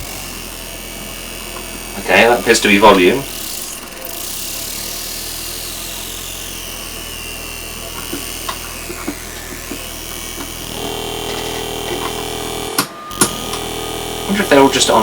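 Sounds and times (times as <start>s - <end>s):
droning tones: 0.0s - 15.0s
harsh electronic noise: 0.0s - 15.0s
small clicks: 3.3s - 15.0s.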